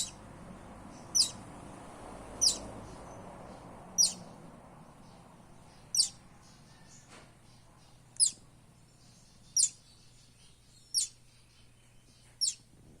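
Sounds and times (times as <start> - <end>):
bird chick peeping: 0.0 - 1.5, 2.2 - 13.0.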